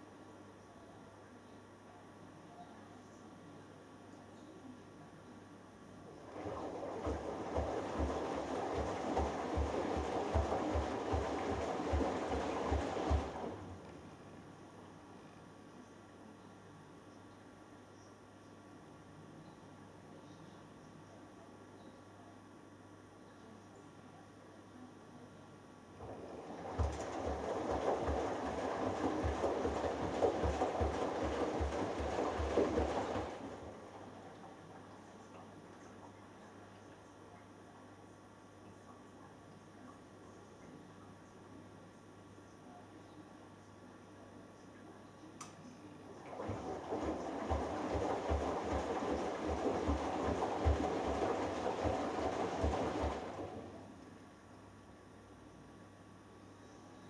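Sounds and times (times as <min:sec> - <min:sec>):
water and laundry sloshing: 0:06.2 - 0:14.2, 0:26.0 - 0:36.2, 0:46.1 - 0:54.0
washing machine drum thumping: 0:06.4 - 0:13.6, 0:26.0 - 0:33.6, 0:46.3 - 0:53.6.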